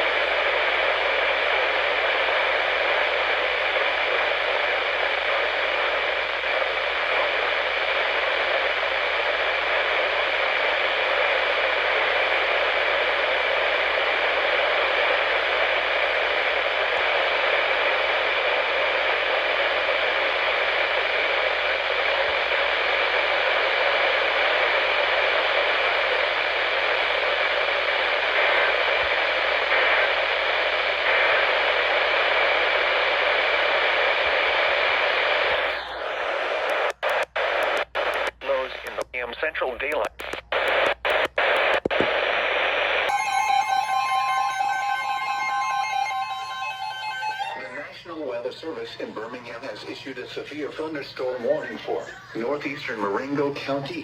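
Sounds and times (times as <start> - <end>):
radio static hiss: 0.0 - 54.0.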